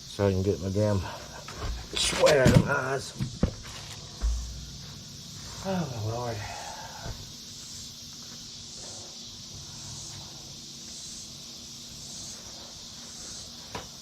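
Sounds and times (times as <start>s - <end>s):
high-pitched insect buzzing: 3.2s - 14.0s.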